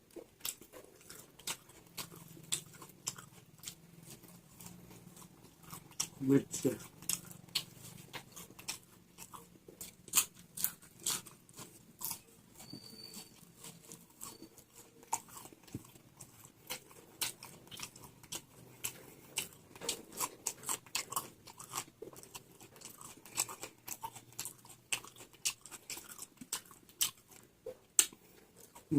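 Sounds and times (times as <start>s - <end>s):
person chewing crunchy food: 0.0s - 28.9s.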